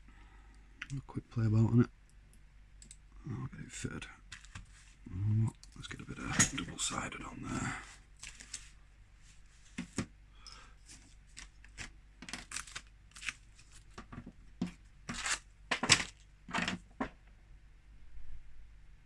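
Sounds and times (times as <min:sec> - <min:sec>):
tape being ripped off: 0:15.1 - 0:16.0.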